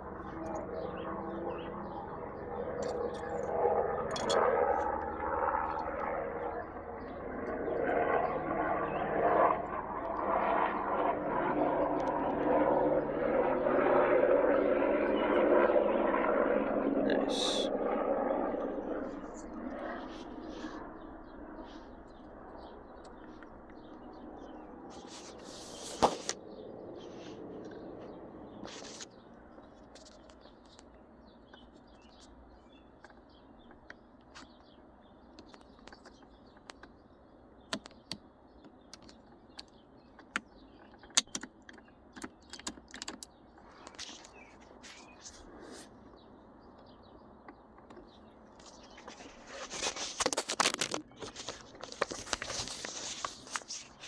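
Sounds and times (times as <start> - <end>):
plastic parts clicking and clattering: 50.2 - 52.8.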